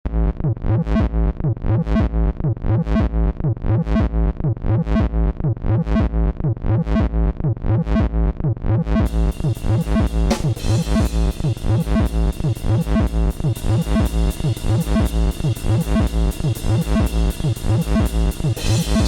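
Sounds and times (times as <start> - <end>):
electronic instrumental music: 9.0 - 19.0
bright high percussion: 9.2 - 19.0.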